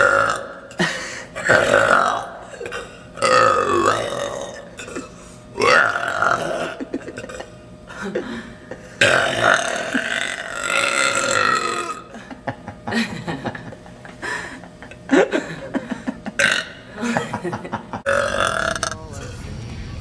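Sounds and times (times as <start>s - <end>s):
woman burping: 6.4s - 7.5s, 16.4s - 16.8s, 18.1s - 18.8s.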